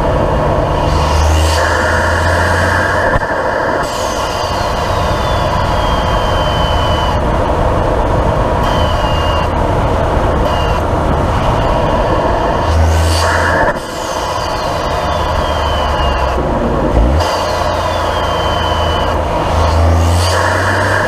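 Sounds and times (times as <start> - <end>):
intake noise: 0.0 - 21.0
turbocharged car engine: 0.0 - 21.0
turbo whistle: 0.8 - 7.3, 8.6 - 9.6, 10.4 - 10.8, 12.6 - 16.4, 17.0 - 21.0.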